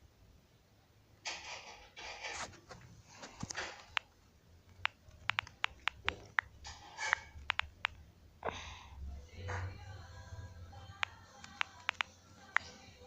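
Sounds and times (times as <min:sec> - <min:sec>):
soft breathing: 0:02.9 - 0:03.7, 0:08.4 - 0:09.3
typing clicks: 0:04.7 - 0:08.0, 0:11.0 - 0:12.7.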